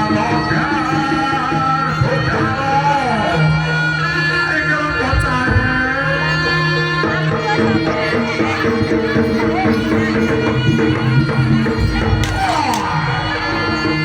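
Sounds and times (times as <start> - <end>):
gamelan music: 6.7 - 14.0.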